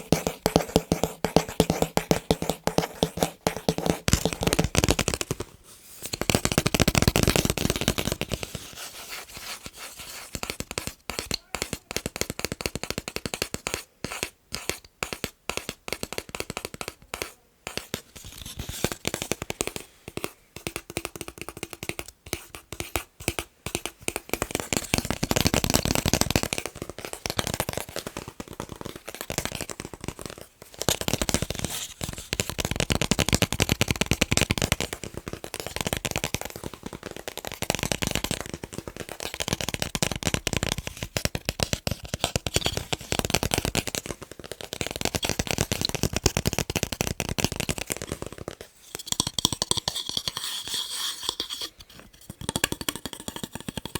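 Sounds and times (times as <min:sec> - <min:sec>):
fast tapping on picture frames: 0:00.0 - 0:50.5, 0:51.3 - 0:53.9.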